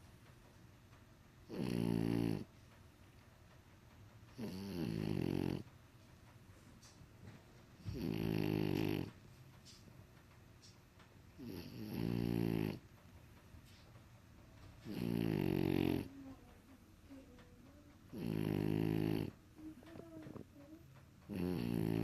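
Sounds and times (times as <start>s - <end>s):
dog snoring: 1.4s - 2.6s, 4.3s - 5.8s, 7.8s - 9.3s, 11.4s - 12.9s, 14.8s - 16.4s, 18.1s - 20.7s, 21.3s - 22.0s.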